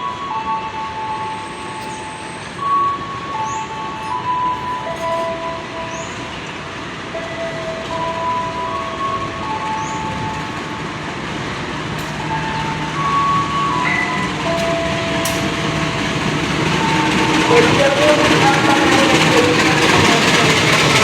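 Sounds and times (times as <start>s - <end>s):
electric train rumbling on track: 0.0s - 21.0s.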